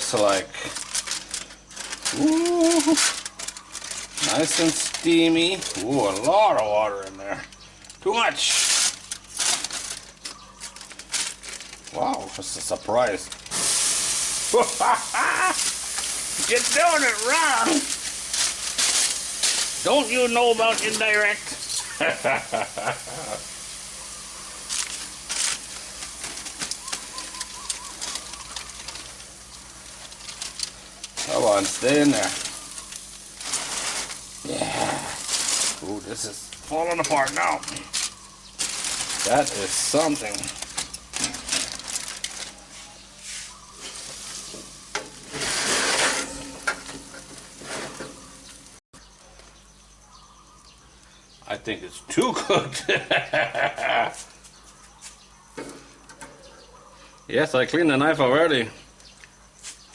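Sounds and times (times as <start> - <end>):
ribs sizzling on barbecue: 0.0 - 50.8
hissing bursts: 13.5 - 35.9.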